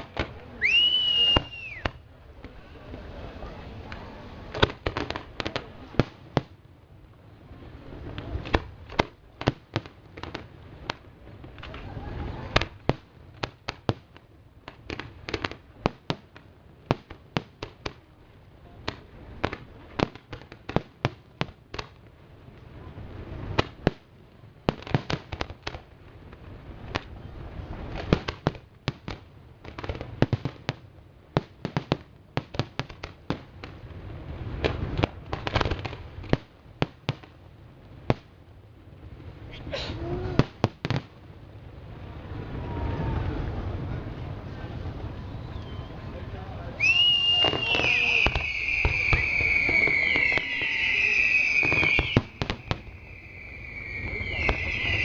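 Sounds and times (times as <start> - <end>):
low rumble: 41.6 - 46.6.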